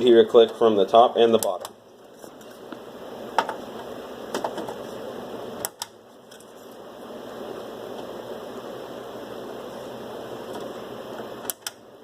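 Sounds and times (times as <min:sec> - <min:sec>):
memory clips snapping shut: 0:05.6 - 0:06.0, 0:11.4 - 0:11.8.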